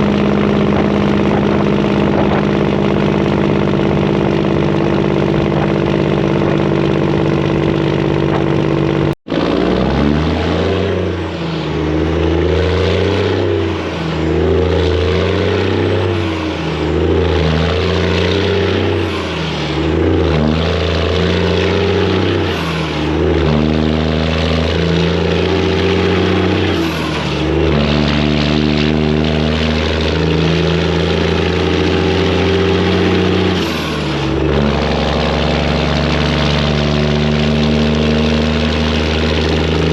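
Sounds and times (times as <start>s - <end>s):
diesel truck engine revving: 0.0s - 39.9s
high turbo whistles: 9.3s - 39.9s.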